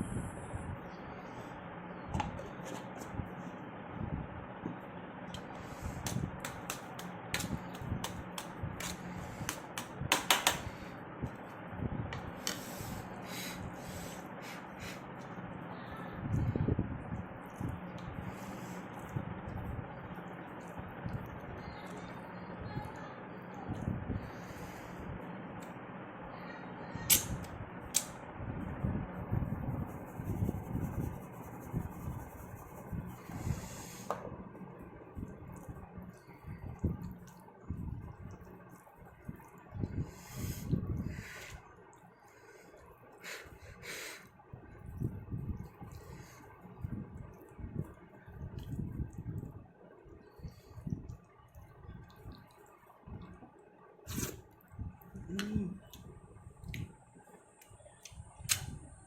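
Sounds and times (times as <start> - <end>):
wet eating clicks and smacks: 5.3 - 10.6, 36.8 - 37.5, 47.3 - 49.4, 54.2 - 56.9.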